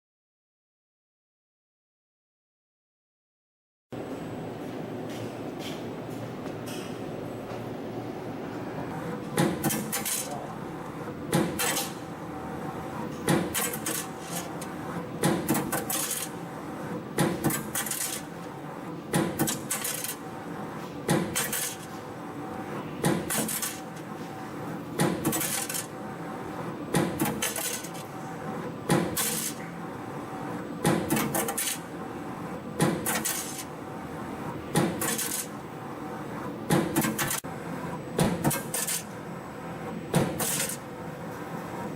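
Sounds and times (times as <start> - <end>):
spring coiling machine running: 9.4 - 16.5, 17.2 - 37.5, 40.1 - 41.3.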